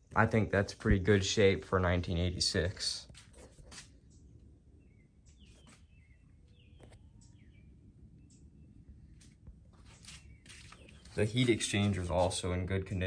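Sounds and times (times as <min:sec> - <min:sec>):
faint bird chirps: 0:04.0 - 0:11.3.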